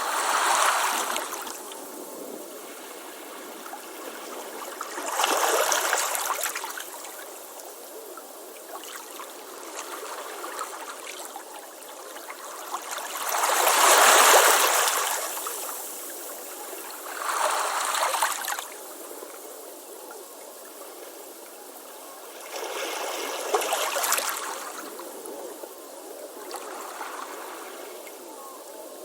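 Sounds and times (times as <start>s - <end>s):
ocean waves hissing surf: 0.0s - 7.0s.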